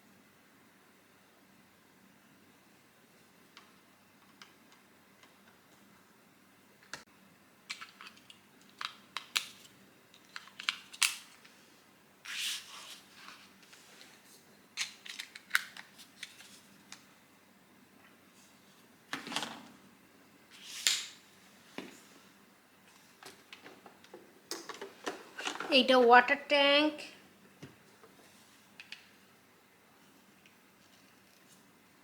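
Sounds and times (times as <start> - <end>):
plastic parts clicking and knocking: 7.7 - 11.5, 14.8 - 17.0.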